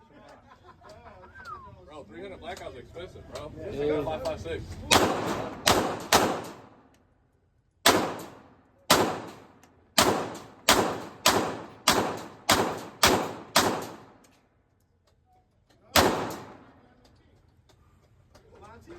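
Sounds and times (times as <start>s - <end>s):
gunshots with echo: 4.9s - 6.8s, 7.9s - 14.2s, 16.0s - 16.8s.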